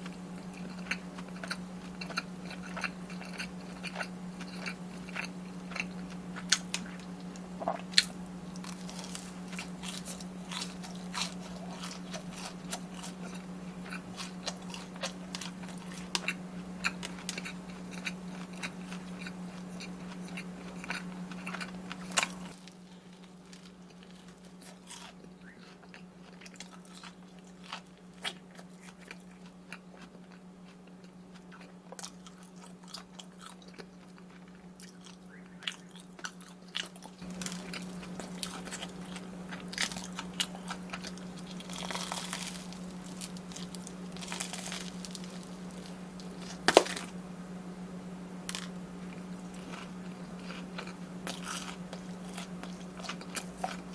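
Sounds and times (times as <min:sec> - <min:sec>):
crunchy snack chewing: 0:00.0 - 0:47.3, 0:48.3 - 0:53.9
low hum: 0:37.2 - 0:53.9.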